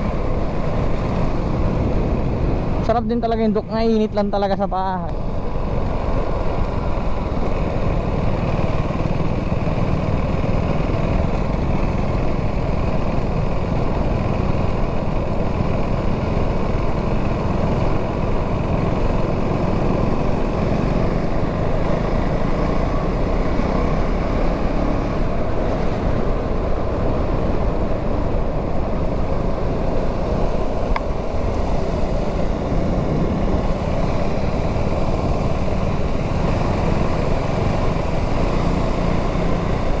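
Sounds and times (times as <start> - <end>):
wind noise on microphone: 0.0 - 3.9, 25.1 - 38.4
motorcycle engine running: 0.0 - 40.0.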